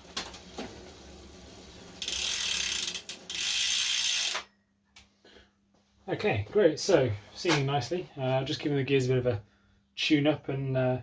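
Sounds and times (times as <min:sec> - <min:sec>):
bike freehub ratcheting buzz: 0:02.0 - 0:04.5.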